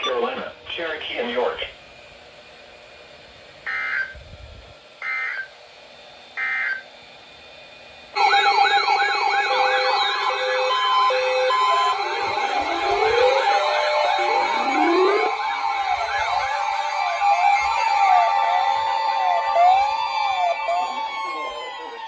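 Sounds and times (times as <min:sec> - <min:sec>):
siren-like wail: 0:03.7 - 0:04.2, 0:05.0 - 0:05.5, 0:06.4 - 0:06.8, 0:08.2 - 0:22.0
warbling data bursts: 0:03.7 - 0:04.2, 0:08.2 - 0:21.8.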